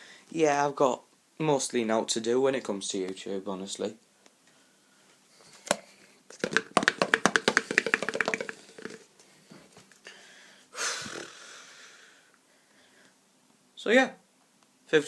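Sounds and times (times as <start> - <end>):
rapid light taps: 6.4 - 9.0.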